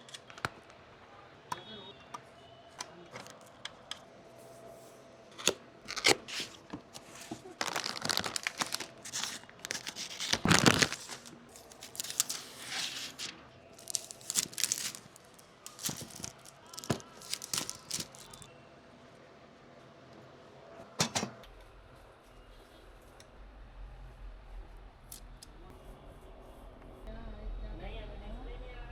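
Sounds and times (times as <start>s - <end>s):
plastic packaging crinkling: 5.4s - 18.5s.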